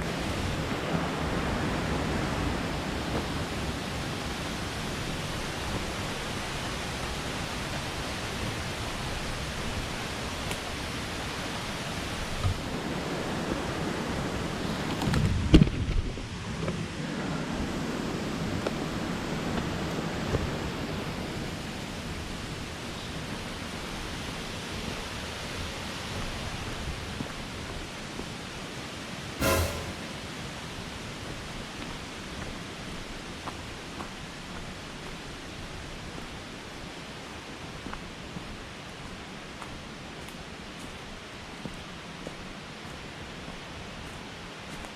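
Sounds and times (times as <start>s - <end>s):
water rushing in a stream and waterfall: 0.0s - 15.0s
sharp knock: 29.4s - 30.3s.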